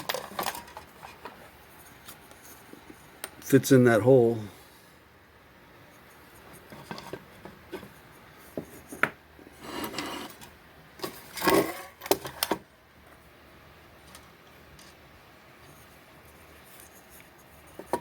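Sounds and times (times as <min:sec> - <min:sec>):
parts rubbing and scraping: 0:00.0 - 0:03.1, 0:05.9 - 0:12.4.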